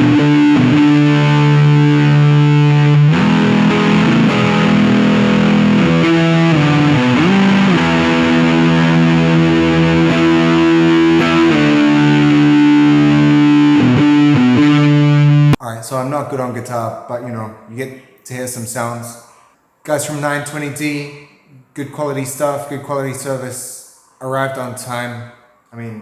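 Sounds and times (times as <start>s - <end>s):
distorted electric guitar power chords: 0.0s - 15.6s.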